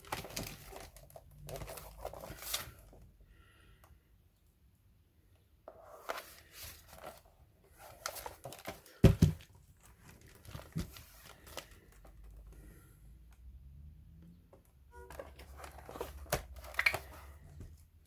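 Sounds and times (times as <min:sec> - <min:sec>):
hands handling plastic laptop: 0:00.0 - 0:03.0, 0:05.7 - 0:13.4, 0:14.6 - 0:18.0.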